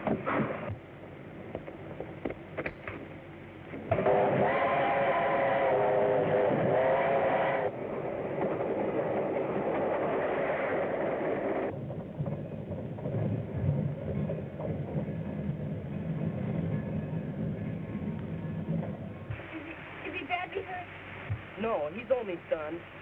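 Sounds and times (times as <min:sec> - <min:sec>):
train rumble and clatter: 0:00.0 - 0:23.0
steam locomotive whistle: 0:03.9 - 0:07.8.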